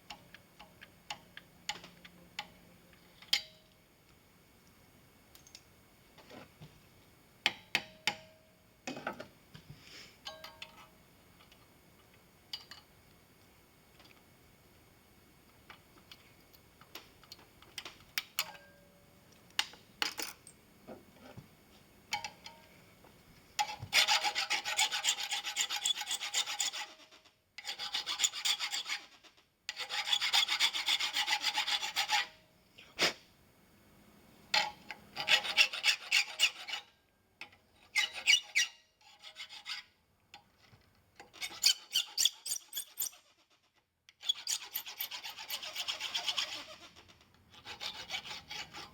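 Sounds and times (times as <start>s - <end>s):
hand file rasping on brass: 23.9s - 32.3s, 35.2s - 36.9s, 38.0s - 40.0s, 41.3s - 48.9s.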